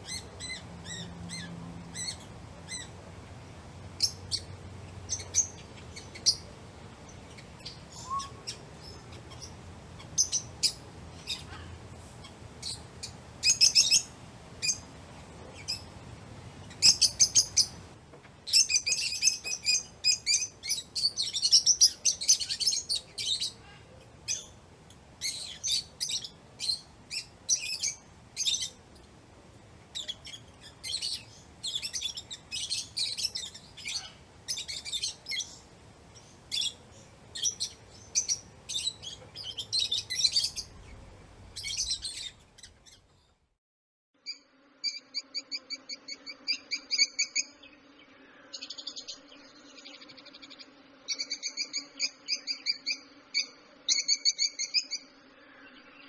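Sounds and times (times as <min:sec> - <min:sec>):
birds chirping: 0:00.0 - 0:43.4.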